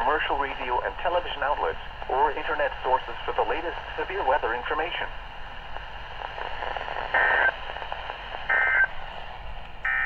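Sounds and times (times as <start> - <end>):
faint radio hiss: 0.0 - 10.0
digital data tone bursts: 8.5 - 8.9.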